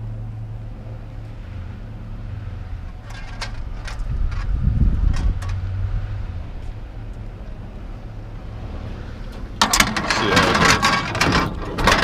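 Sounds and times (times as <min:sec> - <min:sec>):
vehicle engine idling: 0:00.0 - 0:12.0
scrap metal rattling: 0:02.8 - 0:05.7, 0:09.3 - 0:12.0.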